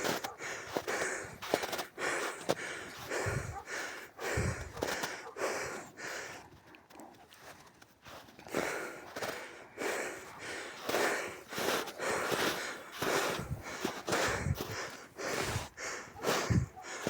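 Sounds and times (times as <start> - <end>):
dogs snorting and huffing: 0.0 - 1.7, 3.2 - 5.5, 11.0 - 17.0.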